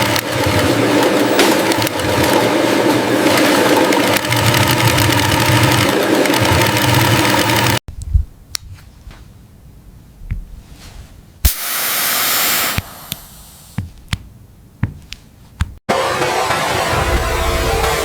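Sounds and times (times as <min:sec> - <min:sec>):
burst of hiss: 0:11.5 - 0:13.8
sharp clicks and taps: 0:12.8 - 0:15.8.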